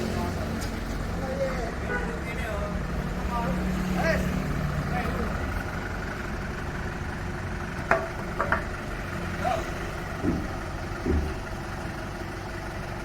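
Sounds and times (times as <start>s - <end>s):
short knocks and clicks: 10.2s - 11.6s.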